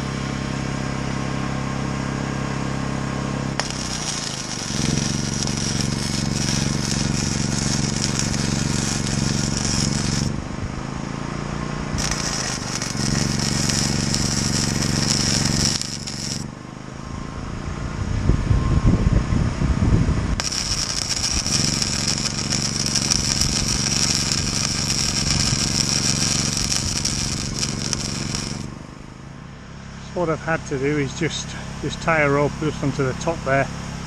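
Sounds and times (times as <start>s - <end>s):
low hum: 2.6s - 30.8s
crackling welding arc: 3.6s - 10.4s, 12.0s - 16.5s, 20.4s - 29.0s.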